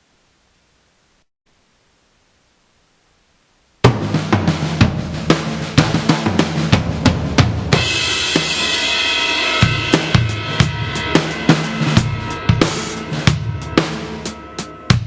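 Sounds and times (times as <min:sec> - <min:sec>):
drum kit beat: 0:03.8 - 0:15.0
cymbal crashing: 0:07.8 - 0:15.0.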